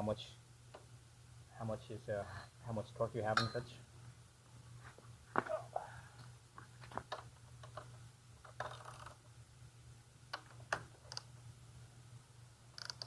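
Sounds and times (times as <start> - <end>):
scratchy ratchet rattle: 8.5 - 9.2, 12.8 - 13.0.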